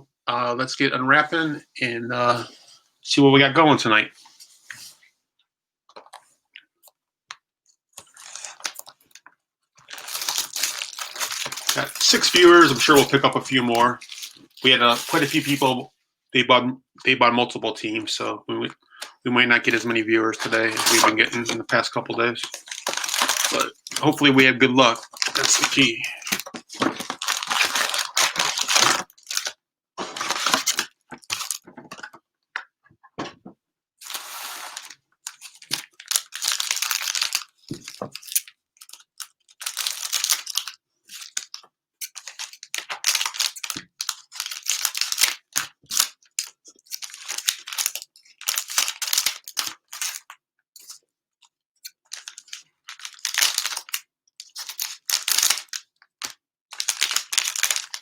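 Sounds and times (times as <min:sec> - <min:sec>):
cellophane tearing and crinkling: 0:08.0 - 0:09.1, 0:09.8 - 0:15.7, 0:19.7 - 0:31.6, 0:34.0 - 0:51.0, 0:52.1 - 0:58.0.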